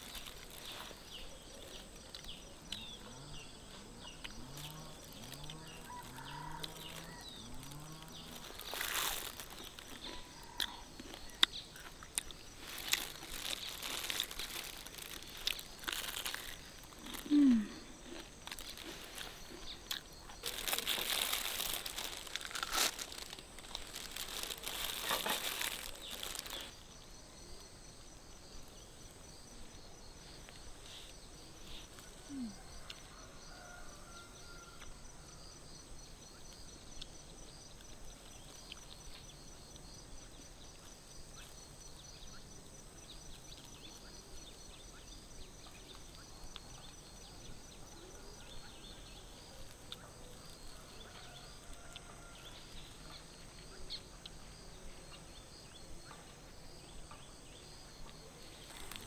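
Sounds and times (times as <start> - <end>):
rustling and crinkling handling: 0.0 - 2.4, 4.6 - 11.2, 11.8 - 26.8, 58.4 - 59.0.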